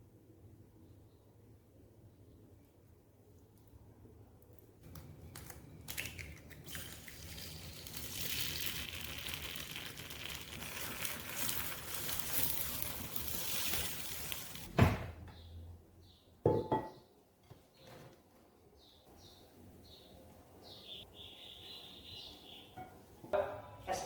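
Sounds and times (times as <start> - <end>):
water running: 5.9 - 14.7
knock: 16.5 - 17.0.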